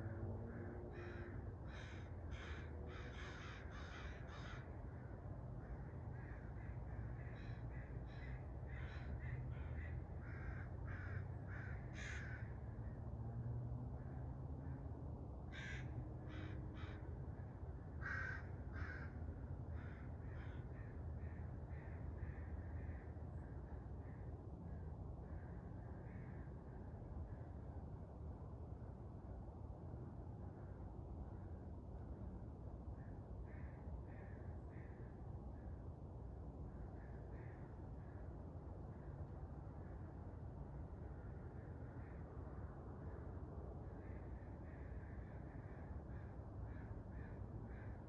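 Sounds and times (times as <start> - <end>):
crows cawing: 0.5 - 12.5, 15.5 - 17.1, 18.0 - 23.1, 33.5 - 35.0.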